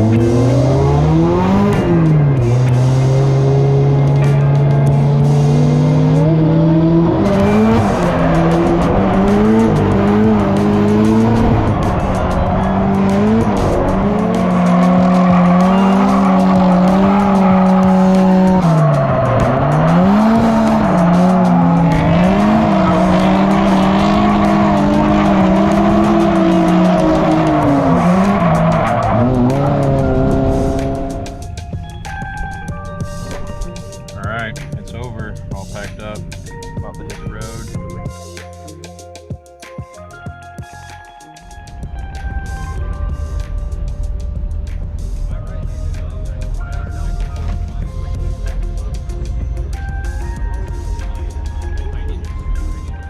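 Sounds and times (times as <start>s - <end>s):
car engine revving hard: 0.0s - 31.6s
tyres squealing: 7.3s - 31.5s.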